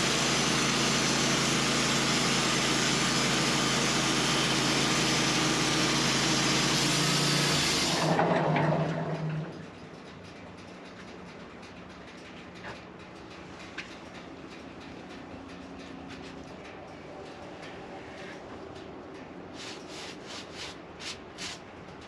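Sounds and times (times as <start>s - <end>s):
saw cutting through log: 0.0s - 8.0s
sawmill engine running: 0.0s - 22.0s.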